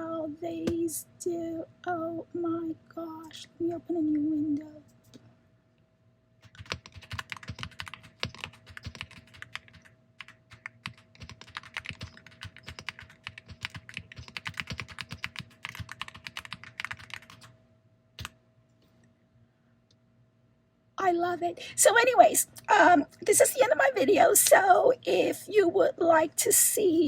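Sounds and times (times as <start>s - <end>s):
mechanical keyboard typing: 6.4s - 17.5s.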